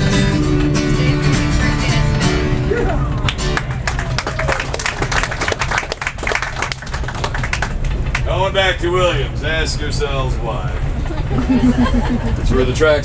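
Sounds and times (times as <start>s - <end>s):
acoustic guitar strumming: 0.0s - 3.9s.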